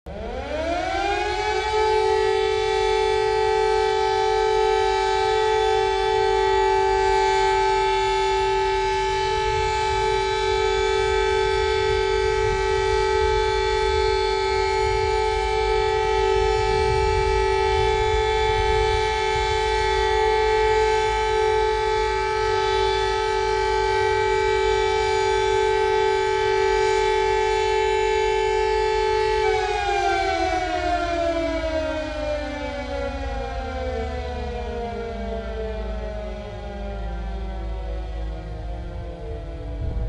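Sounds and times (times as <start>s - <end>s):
siren alert tone: 0.1s - 40.0s
low rumble: 39.8s - 40.0s.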